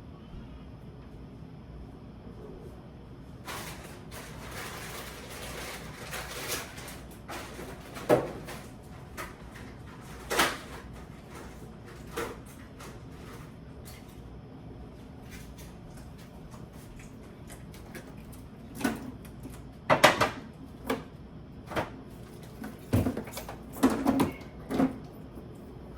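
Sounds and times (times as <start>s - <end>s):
groceries rustling: 3.4s - 13.7s
sharp knocks of items and fridge doors: 7.3s - 12.4s, 19.9s - 22.0s, 22.6s - 25.0s.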